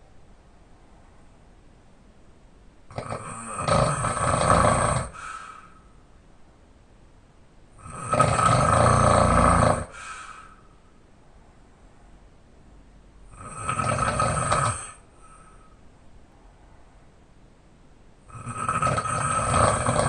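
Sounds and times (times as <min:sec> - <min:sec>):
loud open-mouthed snoring: 0:02.9 - 0:05.6, 0:07.8 - 0:10.4, 0:13.3 - 0:15.1, 0:18.3 - 0:20.0.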